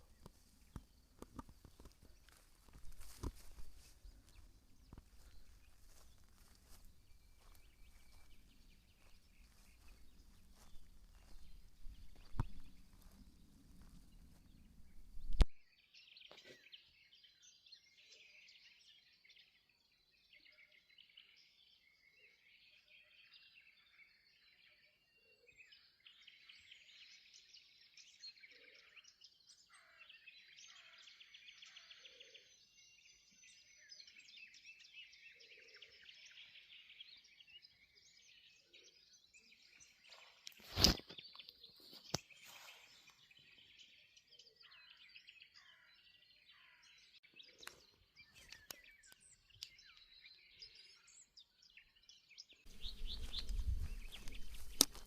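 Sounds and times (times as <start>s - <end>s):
steady outdoor noise: 0.0s - 15.6s, 52.7s - 55.0s
songbirds singing and chirping: 0.0s - 55.0s.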